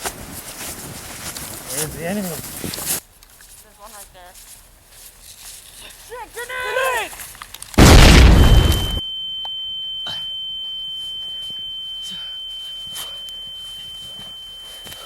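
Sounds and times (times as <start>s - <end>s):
high-pitched ringing tone: 7.8s - 15.0s.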